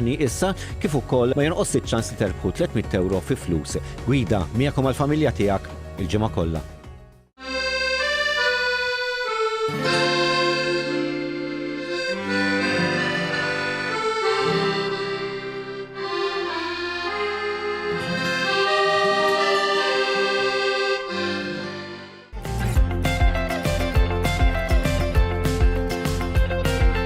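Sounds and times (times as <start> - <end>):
accordion music: 7.3 - 27.0
strummed guitar: 9.7 - 27.0.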